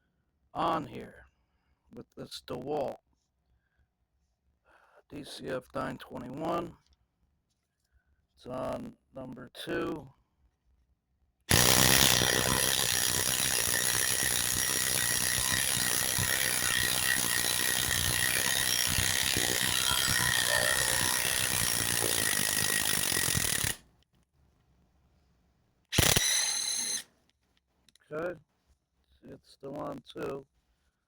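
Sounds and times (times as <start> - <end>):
impact wrench hammering on bolt: 11.5 - 23.8, 26.0 - 27.0.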